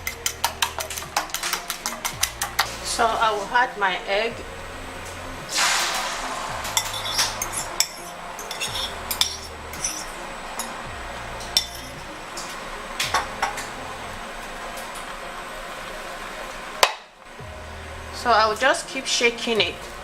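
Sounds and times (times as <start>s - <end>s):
spoon scraping a frying pan: 5.5s - 10.8s, 11.4s - 12.6s.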